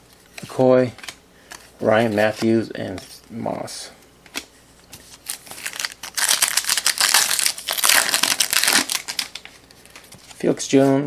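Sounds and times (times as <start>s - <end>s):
wrapper crinkling: 5.1s - 10.1s.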